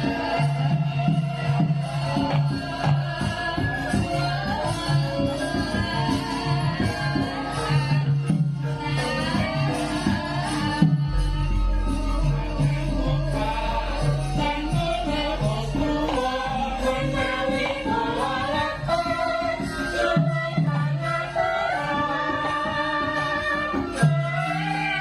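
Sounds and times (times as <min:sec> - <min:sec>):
woman singing: 0:00.0 - 0:25.0
deep sustained low tones: 0:10.8 - 0:19.0
gamelan playing: 0:11.0 - 0:20.2.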